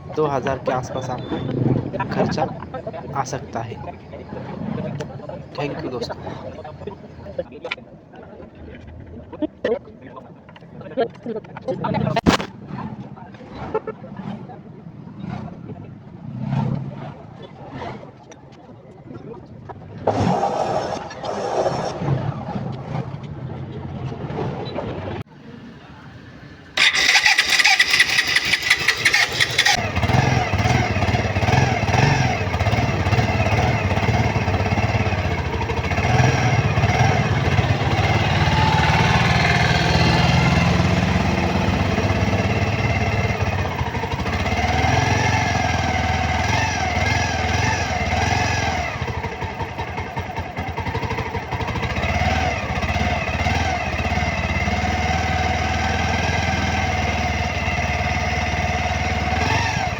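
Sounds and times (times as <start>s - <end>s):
motorcycle engine revving: 0.0s - 7.4s, 26.8s - 59.9s.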